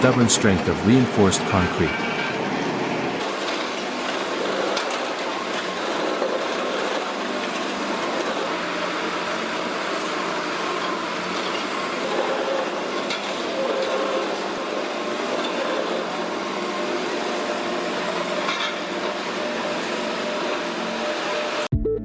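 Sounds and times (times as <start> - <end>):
excavator running under load: 0.0 - 21.7
hydraulic crusher on concrete: 3.2 - 21.7.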